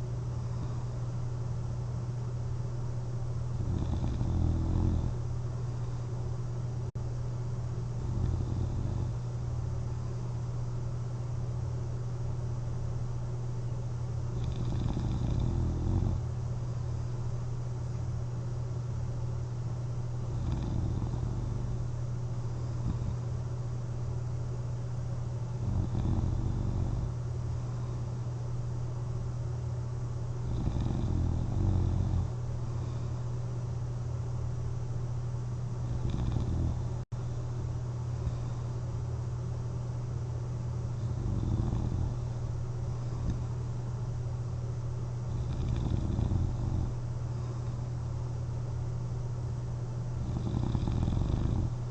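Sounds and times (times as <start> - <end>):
soft rough snoring: 0.0 - 1.0, 3.5 - 5.2, 8.0 - 9.3, 14.3 - 16.3, 20.3 - 23.4, 25.6 - 28.2, 30.4 - 33.3, 35.8 - 37.0, 38.1 - 38.8, 41.0 - 43.6, 45.3 - 47.9, 50.1 - 51.9
steady low hum: 0.0 - 51.9.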